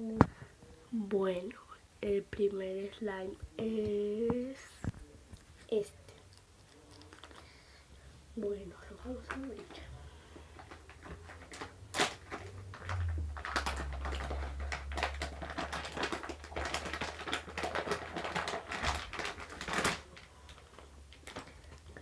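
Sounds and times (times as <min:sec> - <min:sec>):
plastic wrapper crinkling: 0:06.0 - 0:07.8, 0:08.8 - 0:22.0
plastic packaging click: 0:10.6 - 0:21.9.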